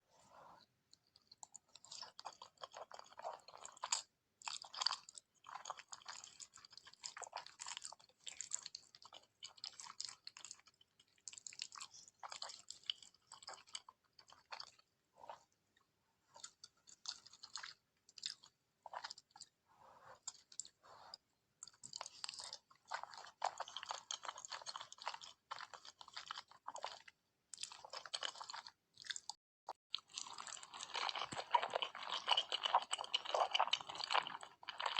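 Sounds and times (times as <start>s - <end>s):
close chewing mouth sounds: 0.6s - 34.9s.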